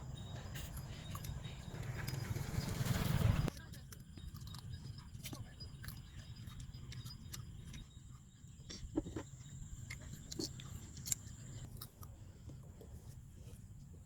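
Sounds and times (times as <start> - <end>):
people chewing food: 0.0 - 2.5, 3.5 - 14.0
low steady rumble: 0.0 - 10.9.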